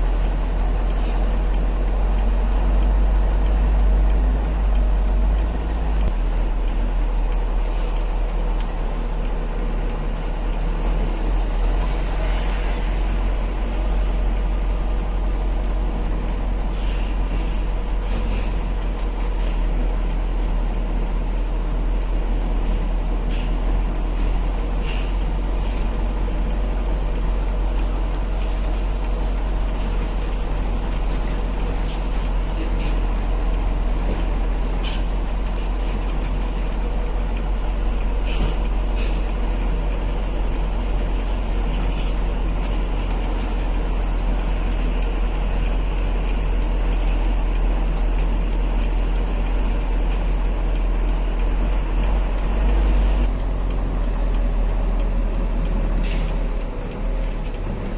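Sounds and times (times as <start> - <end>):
faint regular ticking: 0.0 - 57.9
heavy truck driving: 0.0 - 57.9.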